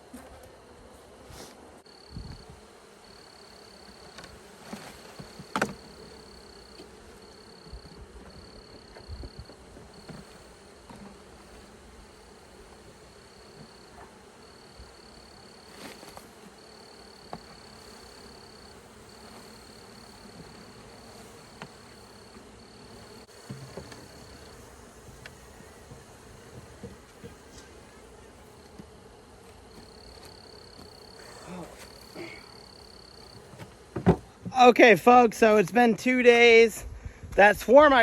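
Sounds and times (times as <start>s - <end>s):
bee swarm buzzing: 0.0s - 36.2s
knocks and bumps: 33.3s - 34.6s.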